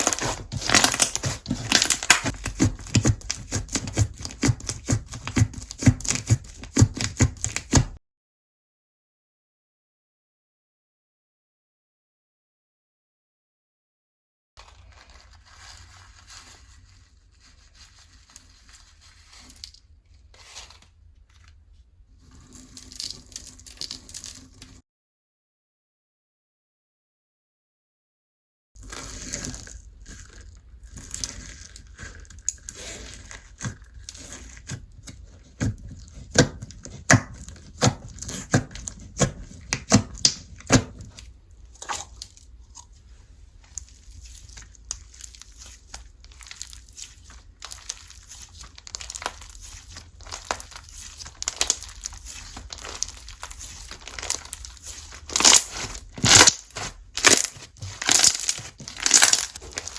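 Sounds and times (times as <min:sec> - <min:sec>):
slime crackling and popping: 0:00.0 - 0:08.0, 0:36.0 - 0:42.8, 0:43.6 - 0:59.9.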